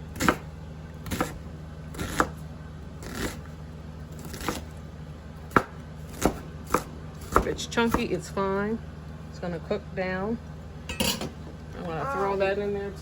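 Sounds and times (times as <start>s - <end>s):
knife chopping on cutting board: 0.2s - 2.4s, 4.2s - 4.7s, 5.5s - 8.1s.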